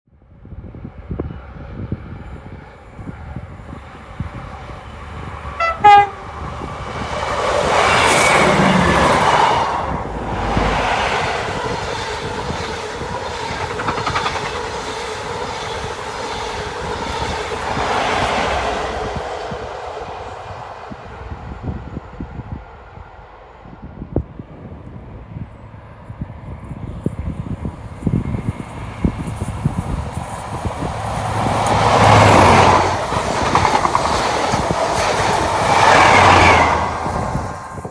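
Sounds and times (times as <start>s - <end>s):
train wheels and engine: 2.0s - 25.2s, 25.9s - 37.9s
train horn blast: 5.5s - 7.1s.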